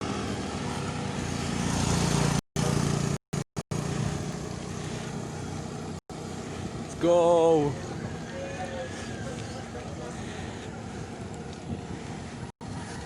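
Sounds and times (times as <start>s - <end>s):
vehicle engine running: 0.0s - 8.2s
road and wind noise: 0.0s - 13.0s.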